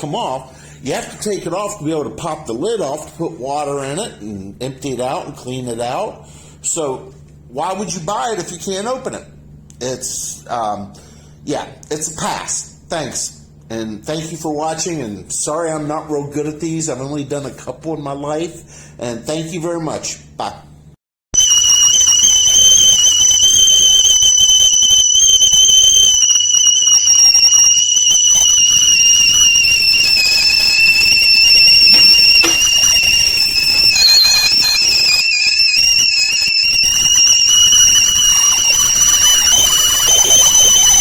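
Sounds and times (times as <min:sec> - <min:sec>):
tea kettle whistling: 0:21.4 - 0:41.0.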